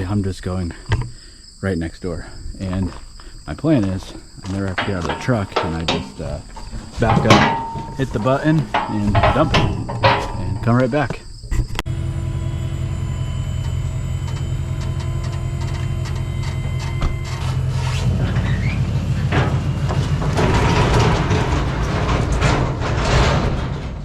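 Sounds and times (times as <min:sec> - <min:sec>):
logs tumbling with clattering knocks: 0:02.6 - 0:11.8, 0:19.2 - 0:24.0
hydraulic pump whining: 0:03.6 - 0:22.4
truck engine running: 0:11.9 - 0:23.0.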